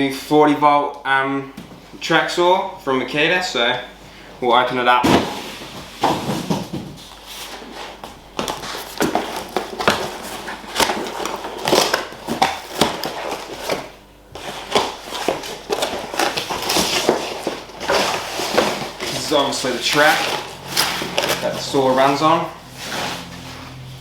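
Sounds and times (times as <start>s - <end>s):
cardboard box being unpacked: 5.0s - 23.9s.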